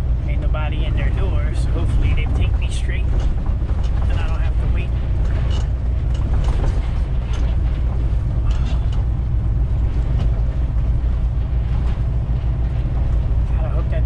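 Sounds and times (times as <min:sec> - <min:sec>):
diesel truck engine and road rumble: 0:00.0 - 0:14.0
knocks and rattles over bumps: 0:00.0 - 0:14.0.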